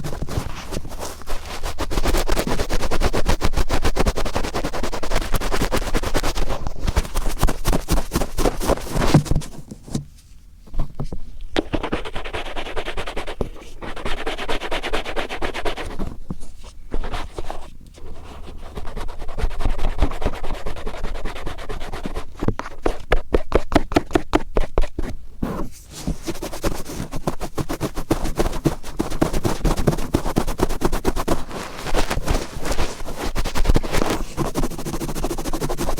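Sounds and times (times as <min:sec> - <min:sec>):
cotton swab rubbing microphone: 0:00.0 - 0:09.6, 0:25.0 - 0:35.9.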